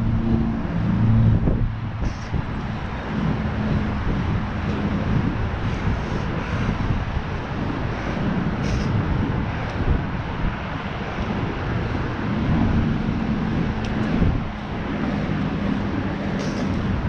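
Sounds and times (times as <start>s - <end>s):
low road rumble from bicycle: 0.0s - 17.0s
wind buffeting microphone: 0.0s - 17.0s.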